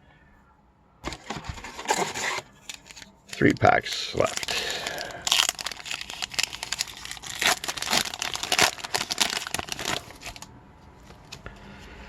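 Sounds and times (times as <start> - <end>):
wrapper tearing and crinkling: 1.1 - 10.5.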